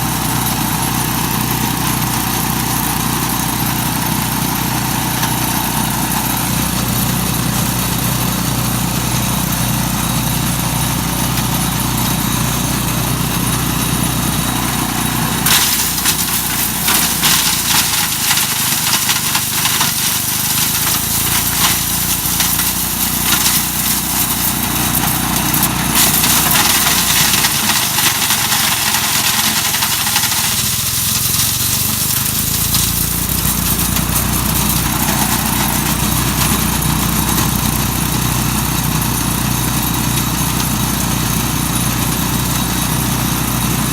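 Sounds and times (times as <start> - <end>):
wood chipper running: 0.0 - 43.9
walnuts being ground clattering: 15.5 - 35.4.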